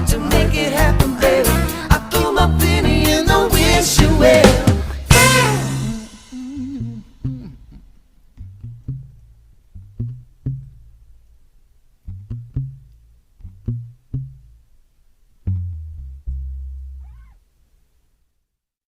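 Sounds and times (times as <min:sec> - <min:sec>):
low percussive instrumental notes: 0:15.5 - 0:17.2.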